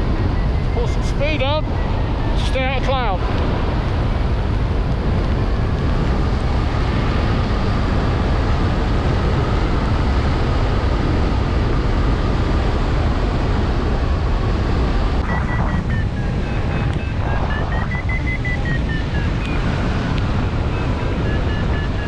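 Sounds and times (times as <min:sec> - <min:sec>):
wind rushing over microphone: 0:00.0 - 0:22.0.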